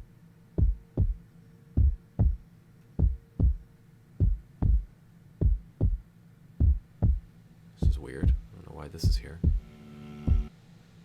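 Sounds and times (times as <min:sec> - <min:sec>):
faint steady hum: 0:00.0 - 0:11.0
heartbeat-style double thumps: 0:00.6 - 0:01.2, 0:01.8 - 0:02.4, 0:03.0 - 0:03.6, 0:04.2 - 0:06.0, 0:06.6 - 0:10.5.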